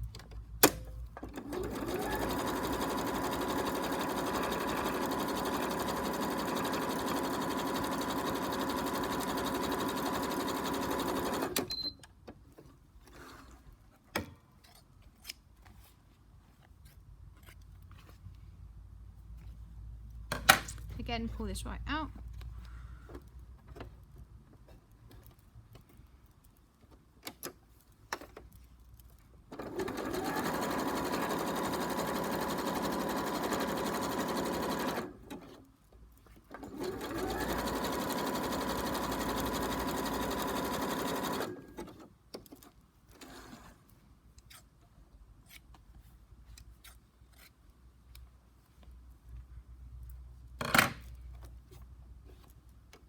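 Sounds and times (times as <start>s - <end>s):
sewing machine stitching: 1.2s - 12.0s, 29.5s - 35.6s, 36.5s - 42.1s, 43.1s - 43.7s.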